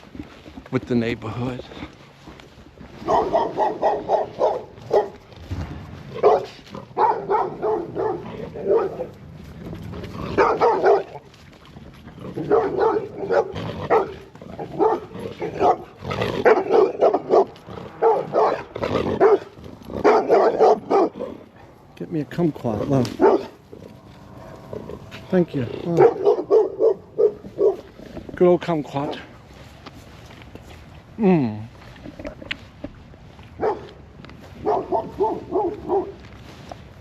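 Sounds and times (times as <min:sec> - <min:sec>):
dog barking: 0:03.0 - 0:05.2, 0:06.2 - 0:09.1, 0:10.3 - 0:11.2, 0:12.4 - 0:21.4, 0:23.1 - 0:23.6, 0:25.9 - 0:27.9, 0:33.6 - 0:34.0, 0:34.6 - 0:36.2.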